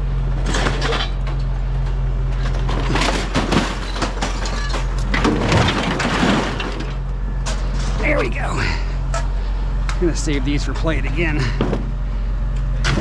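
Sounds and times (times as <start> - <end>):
steady low hum: 0.0 - 13.0
scrap items clattering: 2.4 - 8.1.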